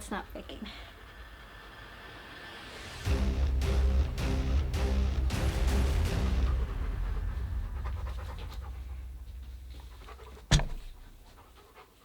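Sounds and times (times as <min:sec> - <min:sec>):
background music: 0:00.0 - 0:11.2
dog panting rapidly: 0:05.4 - 0:12.0.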